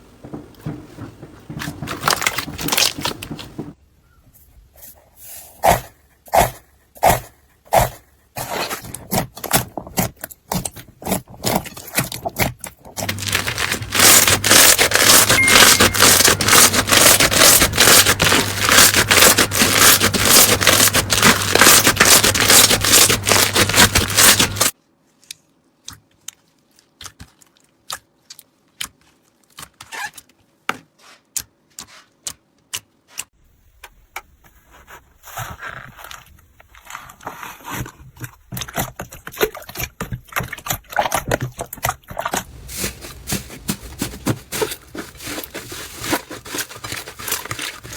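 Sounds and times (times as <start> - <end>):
slime crackling and popping: 13.0 - 24.8.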